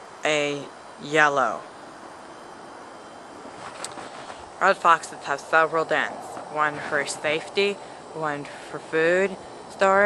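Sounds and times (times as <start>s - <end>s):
steady background hiss: 0.0s - 10.0s.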